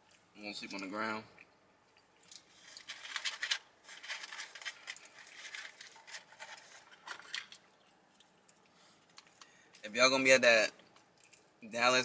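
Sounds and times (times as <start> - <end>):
food crackling while eating: 1.8 - 10.0, 10.7 - 11.7
paper wrapping crinkling: 2.3 - 9.5.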